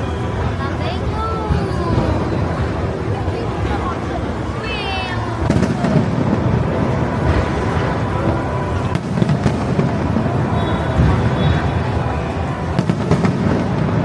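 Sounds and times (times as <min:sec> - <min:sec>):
fireworks cracking: 0:00.0 - 0:14.0
fireworks booming: 0:05.4 - 0:14.0.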